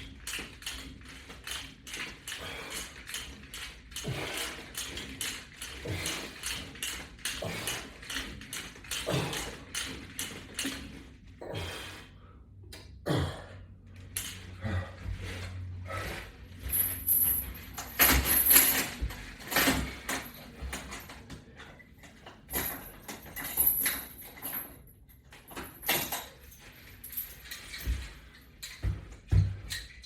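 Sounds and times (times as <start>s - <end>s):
resistance band knocks and clinks: 16.0s - 21.4s, 22.0s - 30.0s.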